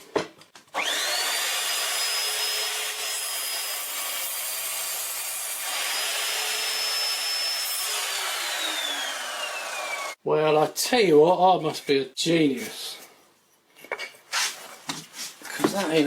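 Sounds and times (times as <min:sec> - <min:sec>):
chop saw motor whine: 0:00.8 - 0:03.0, 0:05.6 - 0:10.2
saw blade cutting wood: 0:00.8 - 0:10.2.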